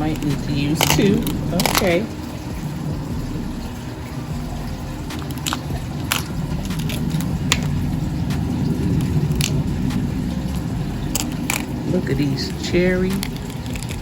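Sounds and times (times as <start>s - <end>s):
low handling rumble: 0.0s - 14.0s.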